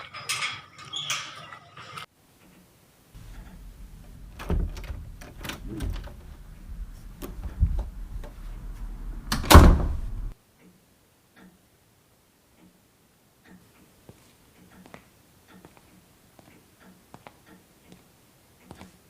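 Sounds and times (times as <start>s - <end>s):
knocks and thumps: 3.2s - 8.4s
low rumble: 3.2s - 10.3s.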